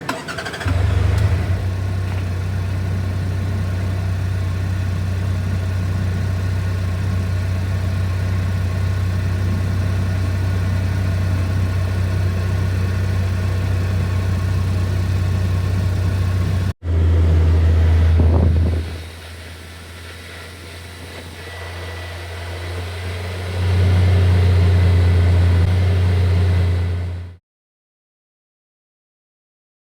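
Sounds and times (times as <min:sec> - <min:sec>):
vehicle engine idling: 0:00.0 - 0:27.4
heater fans blowing: 0:17.5 - 0:27.0.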